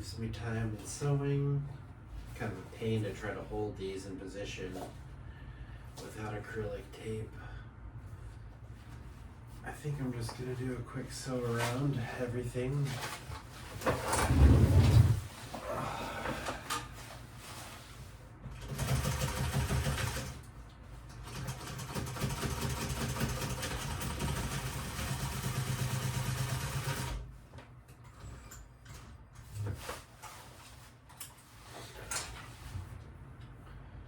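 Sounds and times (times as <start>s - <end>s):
sewing machine stitching: 18.5s - 20.4s, 21.2s - 27.3s.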